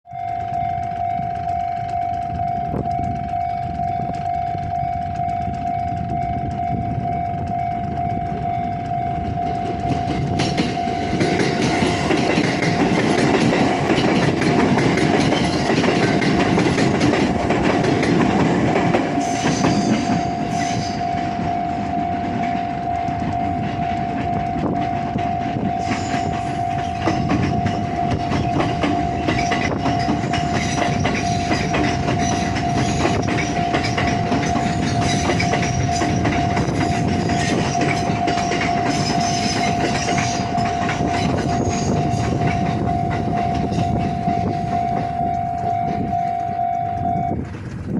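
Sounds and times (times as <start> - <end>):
train wheels clattering over rail joints: 0.1 - 46.1, 47.3 - 47.9
level crossing bell ringing: 32.0 - 47.3.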